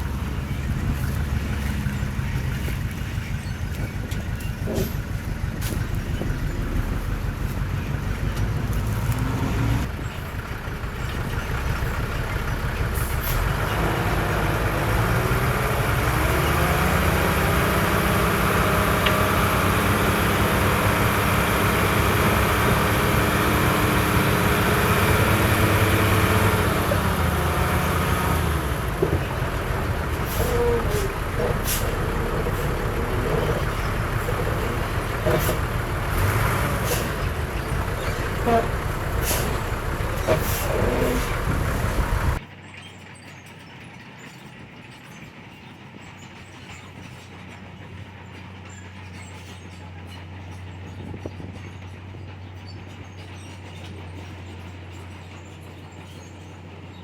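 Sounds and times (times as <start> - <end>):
heavy diesel machinery engine: 0.0 - 42.5.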